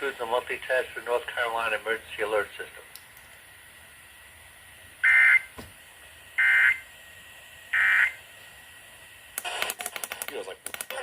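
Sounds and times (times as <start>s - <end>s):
two-tone data bursts: 6.4s - 6.8s, 7.8s - 8.2s.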